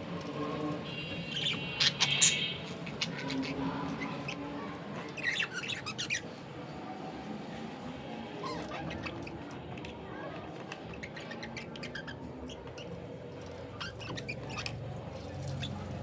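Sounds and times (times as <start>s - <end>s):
budgerigars chattering and chirping: 1.3s - 4.1s.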